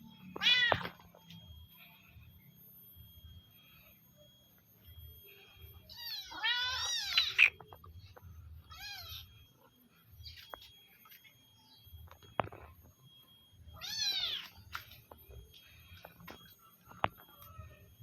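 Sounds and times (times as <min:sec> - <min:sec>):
cat meowing: 0:00.4 - 0:00.9.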